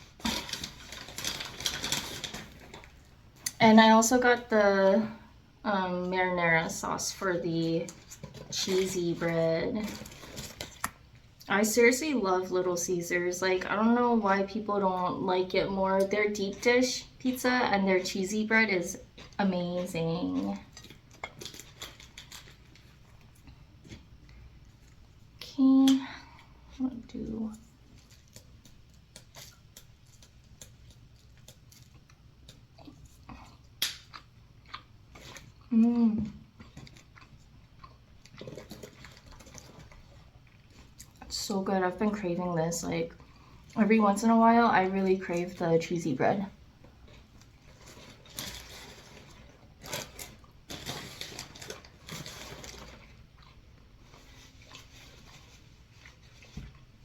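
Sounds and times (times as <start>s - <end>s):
eating and food handling: 0.0s - 4.5s, 5.9s - 57.0s
person chewing bread: 19.0s - 19.4s, 20.4s - 25.4s, 27.6s - 41.3s, 46.8s - 57.0s.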